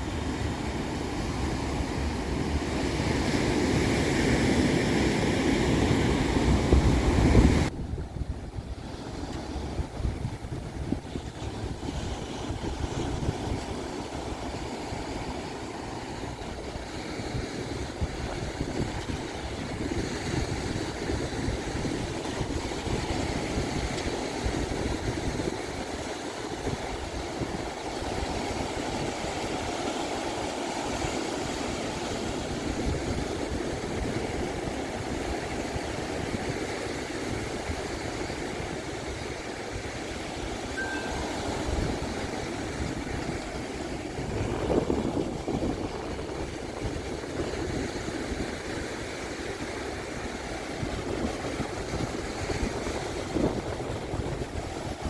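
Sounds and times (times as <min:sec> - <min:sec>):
wind buffeting microphone: 0:00.0 - 0:29.7, 0:41.2 - 0:49.0, 0:49.7 - 0:55.0
surf washing onto beach: 0:00.0 - 0:55.0.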